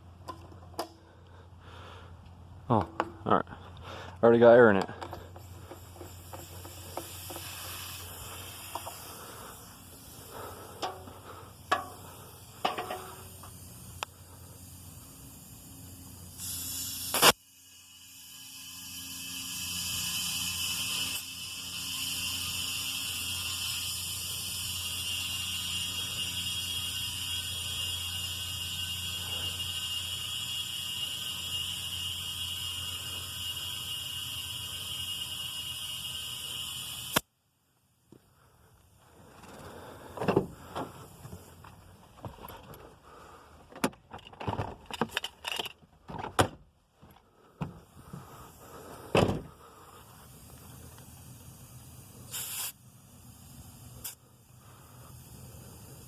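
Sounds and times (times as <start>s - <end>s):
air compressor running: 4.8s - 37.3s, 39.2s - 41.7s, 47.5s - 56.0s.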